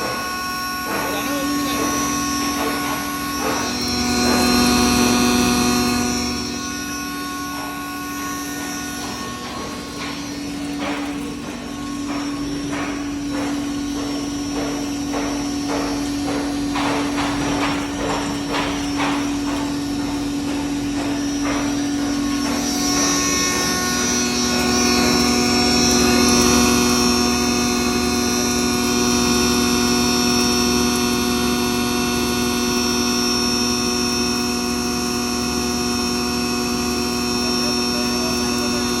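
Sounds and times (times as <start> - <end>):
grinder and blower humming: 0.0 - 39.0
rapid knocks: 7.8 - 27.1.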